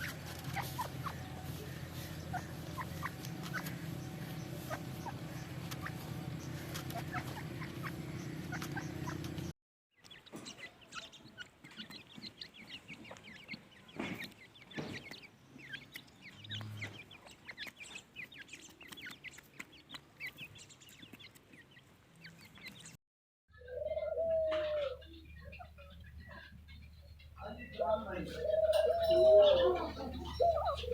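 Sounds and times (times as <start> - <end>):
birds chirping: 0.0 - 23.0, 23.6 - 30.9.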